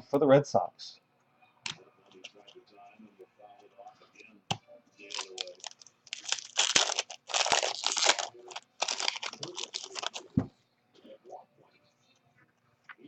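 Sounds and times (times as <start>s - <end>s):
wrapper crinkling and tearing: 5.0s - 10.4s.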